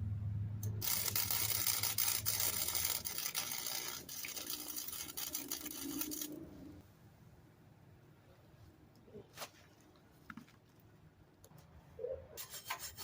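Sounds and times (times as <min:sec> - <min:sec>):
low hum: 0:00.0 - 0:03.0
welder crackling sizzle: 0:00.6 - 0:06.8.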